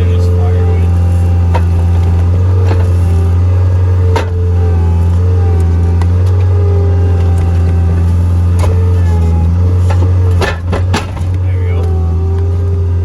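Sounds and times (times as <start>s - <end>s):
skid steer engine running: 0.0s - 13.0s.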